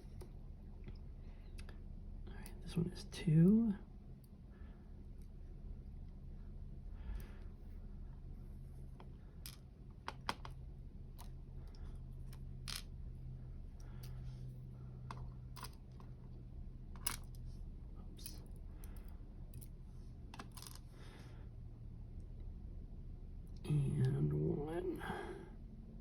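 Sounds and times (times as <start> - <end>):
low hum: 0.0 - 26.0
small metal clicks and taps: 9.0 - 10.6.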